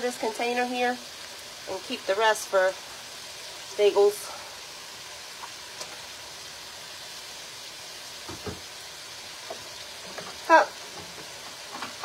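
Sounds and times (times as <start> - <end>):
sauce sizzling in a pot: 0.0 - 12.0.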